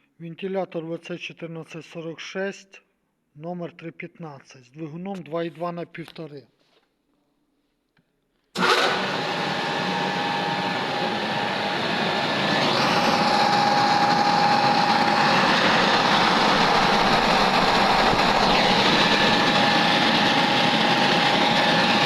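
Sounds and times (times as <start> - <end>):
centrifugal fan air rush: 8.6 - 22.0
electric motor hum and whine: 8.6 - 22.0.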